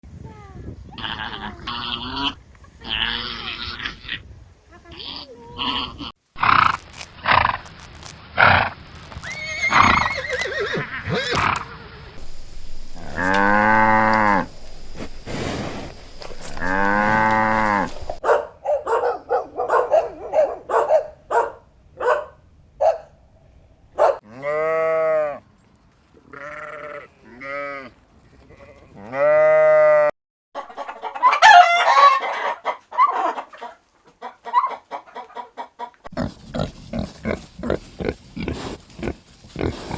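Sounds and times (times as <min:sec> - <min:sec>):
farm animals calling: 0:05.0 - 0:21.5, 0:28.5 - 0:39.9.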